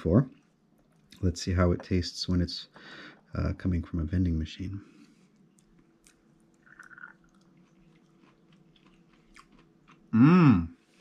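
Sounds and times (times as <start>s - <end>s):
chewing crunchy fish: 5.3s - 10.2s.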